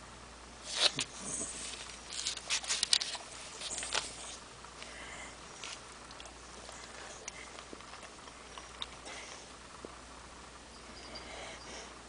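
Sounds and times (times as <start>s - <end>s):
dog snoring: 1.1s - 1.6s.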